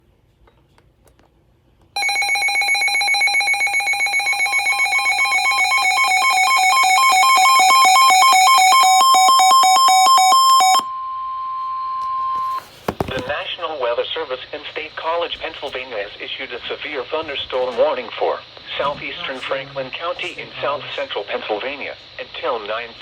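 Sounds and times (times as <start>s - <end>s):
pulsing two-pitch alarm beep: 2.0s - 12.6s.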